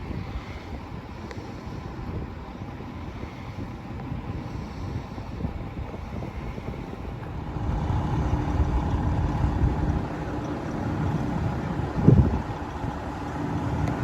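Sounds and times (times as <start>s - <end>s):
vehicle engine humming: 0.0s - 14.0s
wind noise on microphone: 0.0s - 14.0s.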